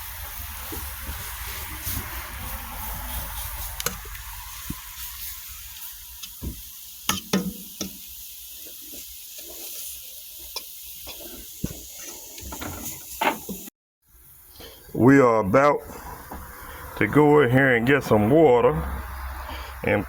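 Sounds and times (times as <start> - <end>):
flour sizzling in a frying pan: 0.0 - 15.0
spoon clicking and scraping pan: 7.1 - 8.1.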